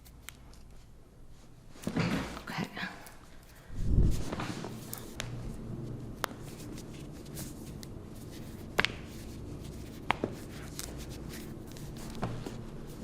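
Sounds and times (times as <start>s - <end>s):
hands rubbing on skin: 6.3s - 13.0s.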